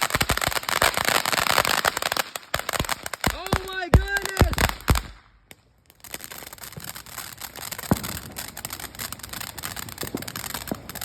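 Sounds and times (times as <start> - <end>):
firework crackling: 0.0 - 11.0
firework bang: 7.8 - 8.6.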